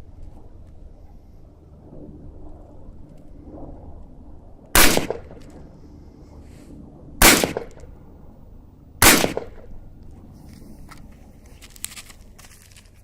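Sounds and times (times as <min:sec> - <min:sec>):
rifle shots with echo: 0:04.7 - 0:05.6, 0:07.2 - 0:08.0, 0:09.0 - 0:09.8.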